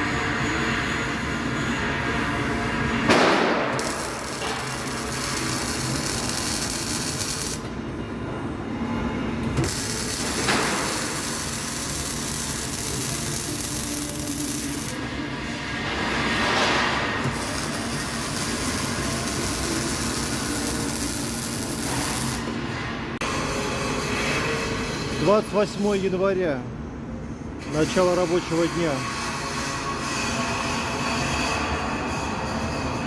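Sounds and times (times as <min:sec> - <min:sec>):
arc welding crackling hiss: 0:03.4 - 0:07.7, 0:09.6 - 0:15.1, 0:17.2 - 0:22.6.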